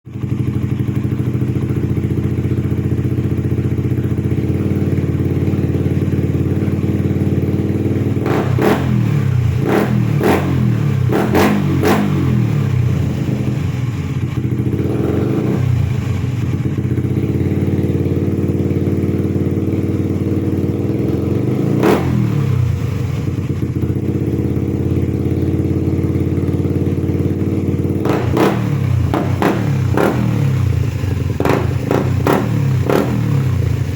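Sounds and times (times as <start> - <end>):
motorcycle idling and revving: 0.0 - 33.9
exhaust popping: 28.0 - 33.9.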